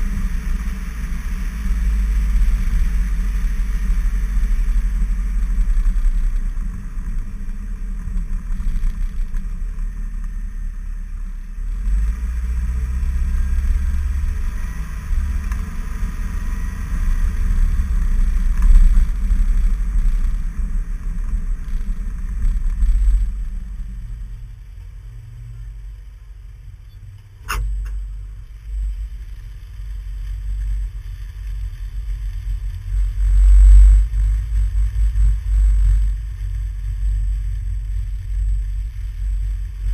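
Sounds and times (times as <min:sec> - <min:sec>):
road noise: 0:00.0 - 0:39.9
sharp click: 0:27.4 - 0:28.0.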